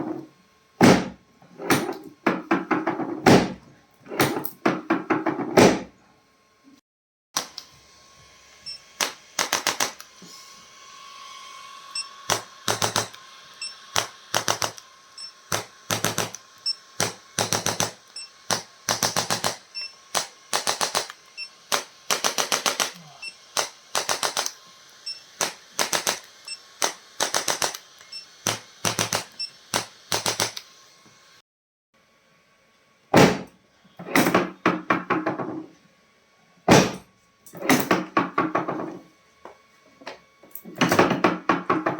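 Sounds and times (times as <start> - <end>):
bursts of sharp clicks: 9.0 - 10.1, 12.3 - 13.2, 13.9 - 14.9, 15.5 - 24.6, 25.4 - 30.7.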